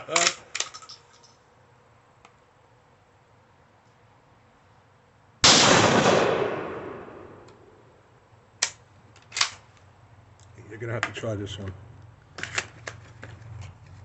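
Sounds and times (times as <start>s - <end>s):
shotgun shot: 5.4s - 7.4s.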